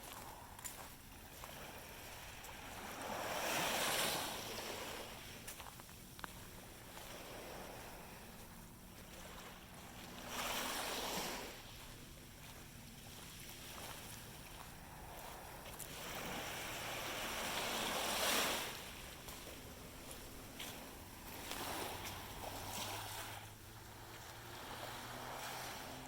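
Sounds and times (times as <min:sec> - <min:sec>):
waves washing on sandy beach: 0:00.0 - 0:26.0.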